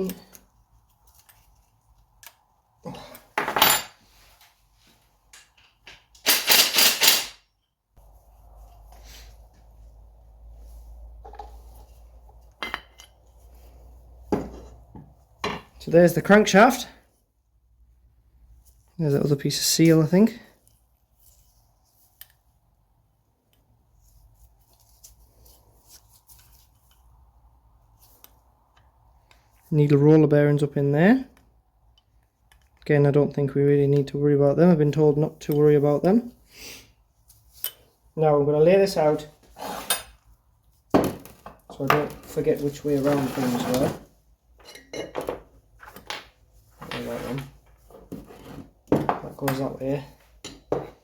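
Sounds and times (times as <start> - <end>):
small parts clicking and rustling: 0.0 - 2.5, 5.3 - 7.7, 31.4 - 32.8
metal engine parts clinking: 5.4 - 7.4.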